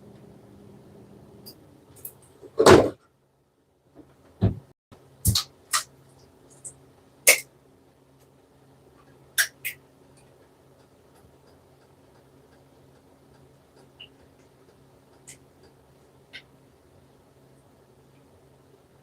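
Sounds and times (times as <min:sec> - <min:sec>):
faint low hum: 0:00.0 - 0:02.5.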